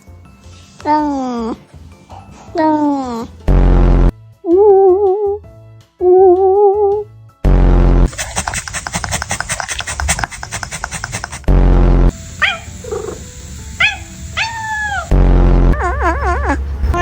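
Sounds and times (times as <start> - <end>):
loud low buzzes: 3.5 - 4.1, 11.4 - 14.4, 15.1 - 15.8
cat making rapid clicks: 8.1 - 11.5, 12.4 - 13.2
cat high swooping calls: 12.4 - 15.1.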